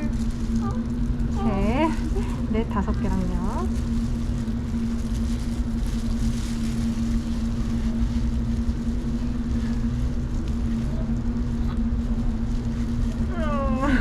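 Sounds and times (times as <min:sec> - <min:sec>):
low machine hum: 0:00.0 - 0:14.0.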